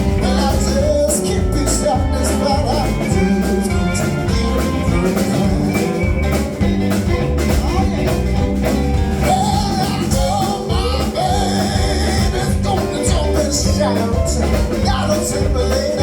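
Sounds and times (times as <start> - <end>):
live blues band playing: 0.0 - 16.0.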